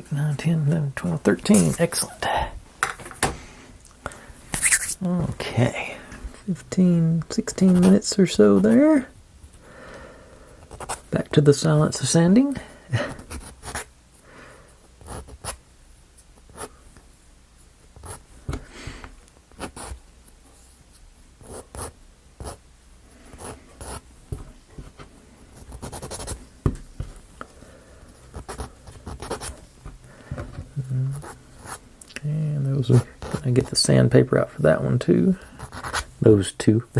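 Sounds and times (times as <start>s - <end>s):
sandpaper scratching on wood: 4.6s - 5.0s.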